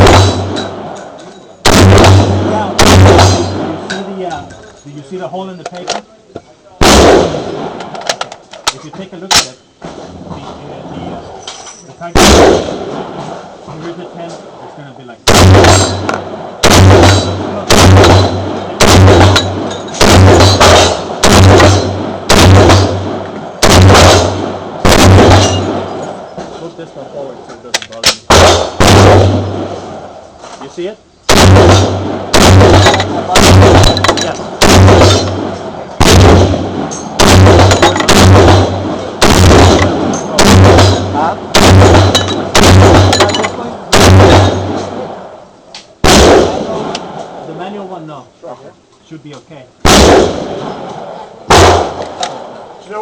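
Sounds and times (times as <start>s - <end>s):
rifle shots with ringing echo: 0.0s - 4.4s, 6.8s - 8.1s, 12.1s - 13.6s, 15.2s - 26.6s, 28.0s - 30.2s, 31.2s - 45.4s, 46.0s - 47.4s, 49.8s - 52.8s.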